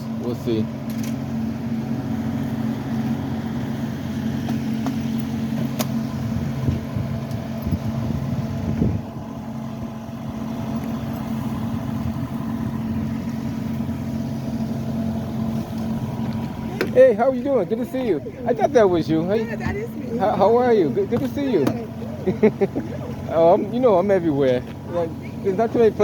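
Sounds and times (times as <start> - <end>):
engine idling: 0.0 - 26.0.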